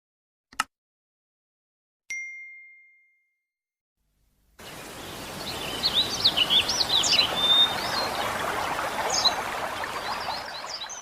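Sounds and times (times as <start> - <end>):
steady outdoor hiss: 4.2 - 11.0
birds chirping: 4.6 - 11.0.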